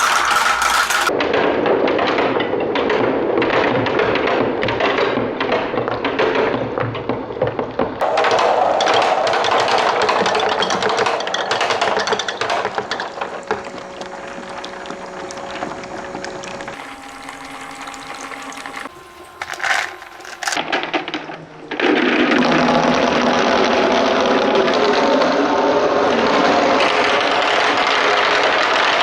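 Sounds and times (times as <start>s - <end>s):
plastic balls rattling down slide: 0.0s - 1.1s, 16.8s - 20.6s
water running: 0.0s - 1.1s, 16.4s - 20.6s.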